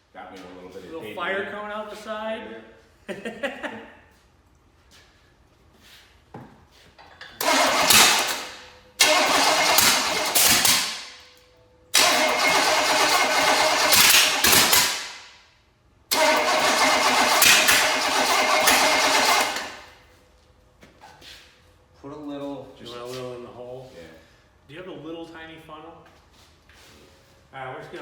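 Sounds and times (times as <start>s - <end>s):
car engine cranking: 7.4s - 11.2s, 11.9s - 15.2s, 16.1s - 20.0s.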